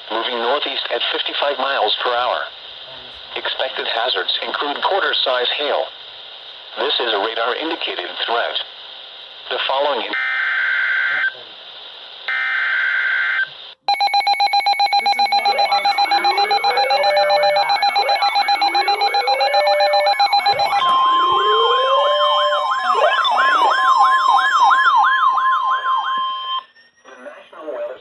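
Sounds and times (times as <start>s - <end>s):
electronic sirens sweeping: 12.4s - 26.9s
pulsing alarm tone: 13.9s - 26.9s.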